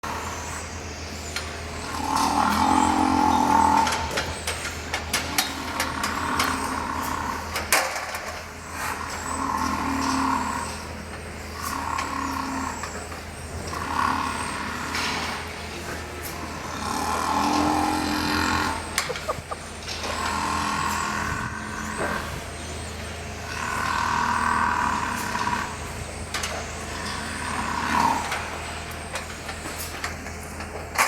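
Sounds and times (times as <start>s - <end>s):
steady low hum: 0.0s - 31.0s
cow snoring loudly: 1.9s - 4.0s, 5.4s - 7.5s, 13.7s - 15.5s, 16.6s - 22.5s, 23.4s - 25.8s.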